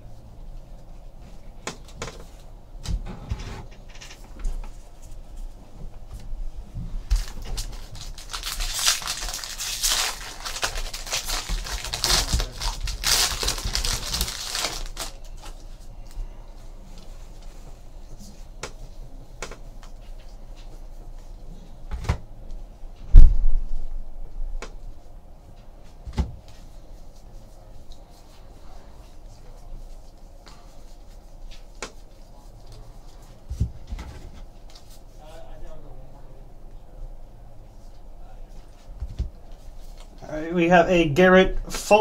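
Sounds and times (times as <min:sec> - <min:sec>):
foil wrapper tearing and crinkling: 0:07.2 - 0:15.6
loud thump: 0:23.1 - 0:23.8.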